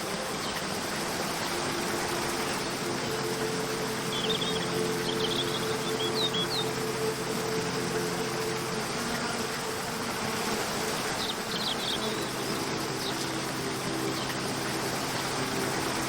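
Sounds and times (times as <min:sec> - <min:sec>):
soft music drone: 0:00.0 - 0:16.0
waterfall rushing: 0:00.0 - 0:16.0
high bird chirps: 0:02.3 - 0:08.3.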